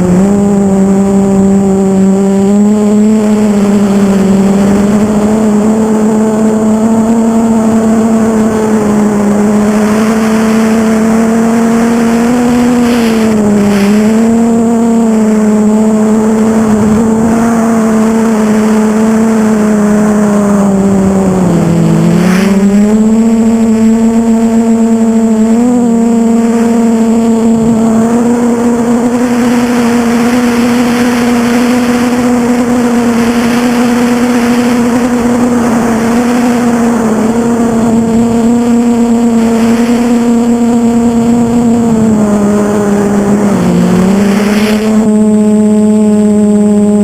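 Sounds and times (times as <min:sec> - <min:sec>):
quadcopter buzzing hum: 0:00.0 - 0:47.0
rushing wind noise: 0:00.0 - 0:47.0.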